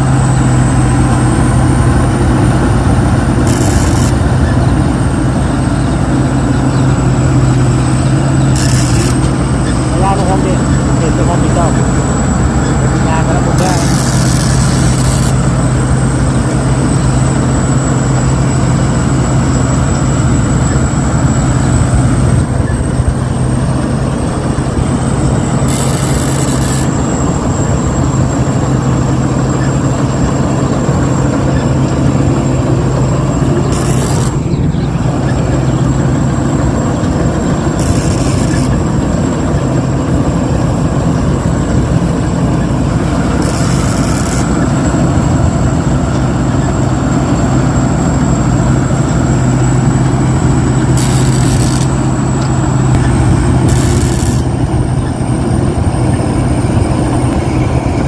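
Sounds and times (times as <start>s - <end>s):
combine harvester engine drone: 0.0s - 58.0s
thin high whine: 0.0s - 58.0s
hissy bursts: 8.5s - 9.4s, 43.3s - 44.6s, 51.0s - 52.0s, 53.7s - 54.5s.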